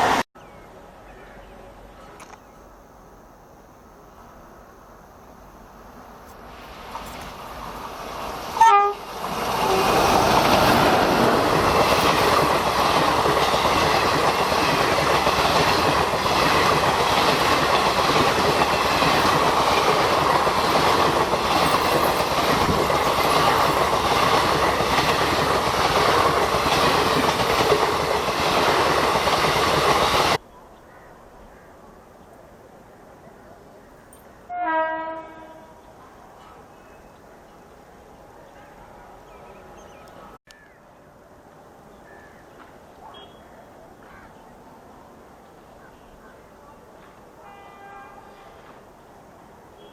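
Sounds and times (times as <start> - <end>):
train horn blast: 8.6 - 10.1, 34.5 - 35.9, 47.4 - 48.8
train wheels clattering on rails: 9.2 - 30.4.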